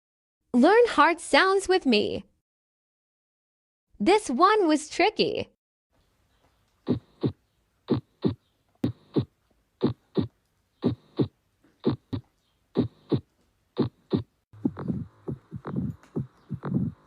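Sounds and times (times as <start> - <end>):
heartbeat lub-dub: 6.9 - 17.0.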